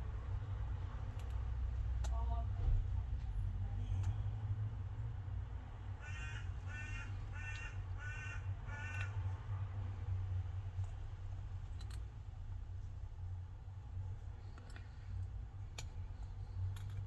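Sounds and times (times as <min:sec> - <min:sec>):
bird calling: 0:06.0 - 0:09.1.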